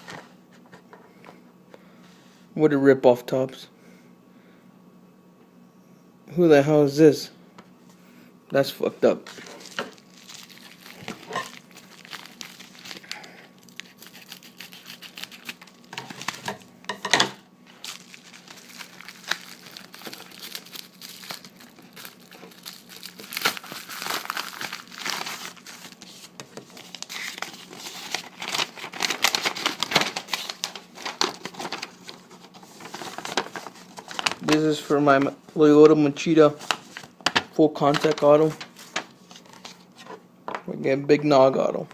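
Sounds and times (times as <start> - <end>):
packaging crinkling and tearing: 9.3 - 16.7, 17.7 - 35.4, 36.5 - 40.0
sharp crack of packaging: 9.6 - 16.7, 17.7 - 26.0, 26.9 - 31.9.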